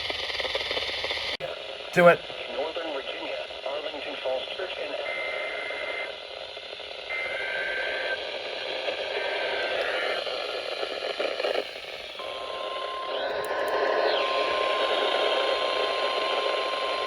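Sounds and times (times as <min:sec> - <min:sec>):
static crackles: 0:00.2 - 0:17.0
radio static hiss: 0:01.4 - 0:17.0
steady warning alarm tone: 0:12.2 - 0:17.0.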